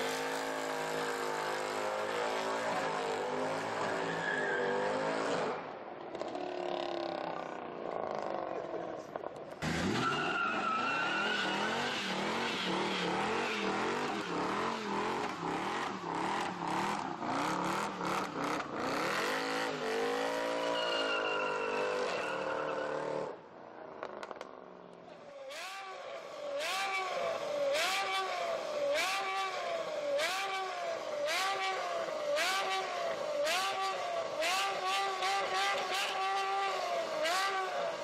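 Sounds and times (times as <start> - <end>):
tyre squeal and skidding: 1.9 - 5.6, 9.6 - 15.0, 18.9 - 23.4.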